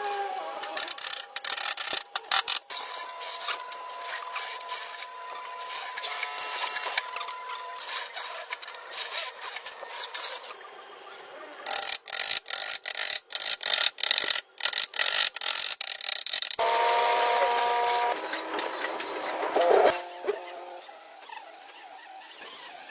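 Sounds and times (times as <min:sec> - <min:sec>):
saw cutting wood: 0:00.0 - 0:10.6, 0:15.0 - 0:22.9
hand tools scraping wood: 0:12.5 - 0:22.9.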